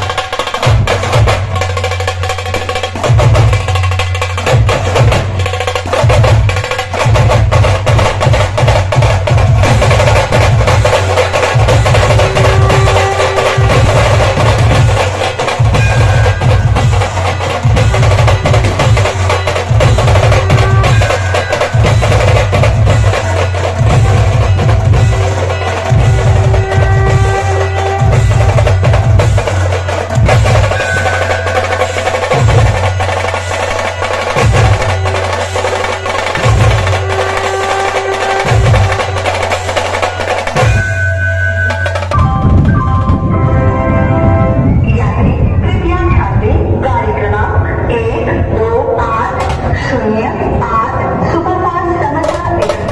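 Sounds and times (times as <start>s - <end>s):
rapid snare drum rolls: 0.0s - 41.0s, 52.1s - 52.9s
held tone: 11.2s - 34.0s, 40.0s - 45.6s.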